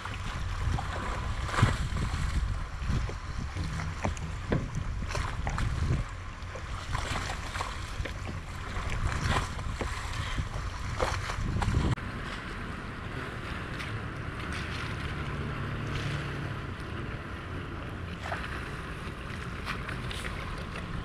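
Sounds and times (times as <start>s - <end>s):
water washing: 0.0s - 21.0s
wind buffeting microphone: 0.0s - 21.0s.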